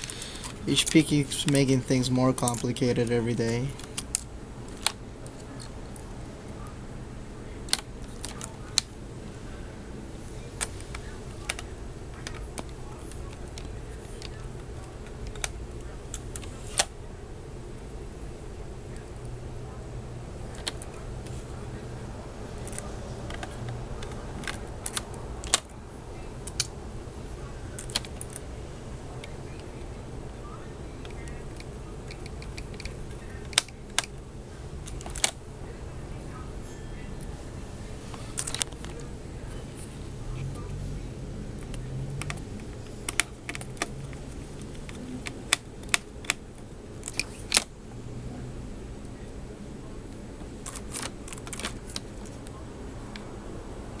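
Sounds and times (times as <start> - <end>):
steady low hum: 0.0 - 54.0
laptop keyboard plastic clicks: 27.8 - 28.4, 41.6 - 46.4
plastic parts clicking and tapping: 31.0 - 34.1, 50.6 - 52.6.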